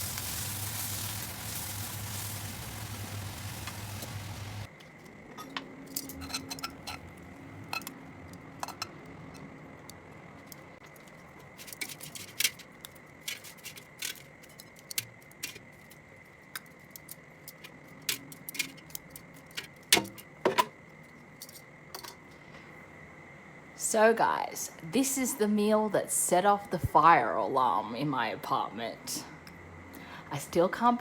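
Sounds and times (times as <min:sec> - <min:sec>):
cutlery and crockery clinking: 0:05.4 - 0:07.1.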